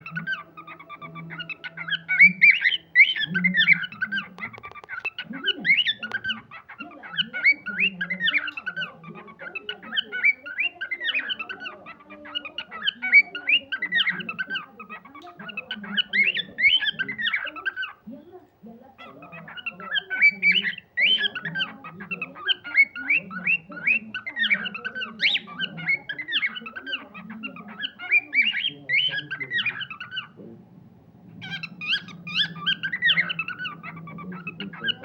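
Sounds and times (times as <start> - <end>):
cockatiel chirping and whistling: 0.0 - 8.9, 31.4 - 35.0.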